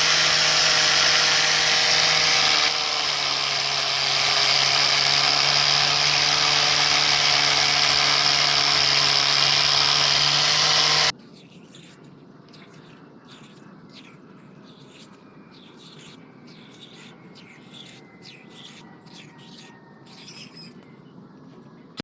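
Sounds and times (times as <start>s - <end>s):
scratching and rubbing on metal: 11.1s - 20.8s.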